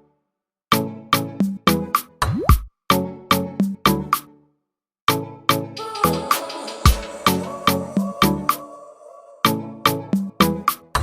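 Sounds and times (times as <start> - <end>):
background music with percussive beat: 0.7 - 4.3, 5.1 - 8.7, 9.8 - 11.0.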